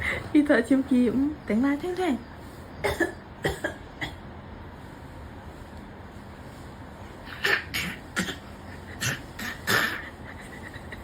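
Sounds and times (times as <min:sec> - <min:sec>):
short coughs: 0:02.8 - 0:04.2, 0:07.7 - 0:10.2.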